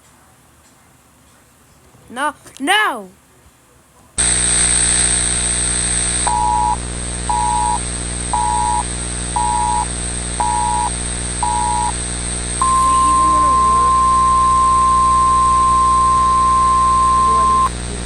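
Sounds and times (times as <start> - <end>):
electrical hum: 4.2 - 18.0
high whine: 4.2 - 18.0
static hiss: 4.2 - 18.0
long steady alarm tone: 6.2 - 17.9
short two-tone beeps: 12.6 - 17.7.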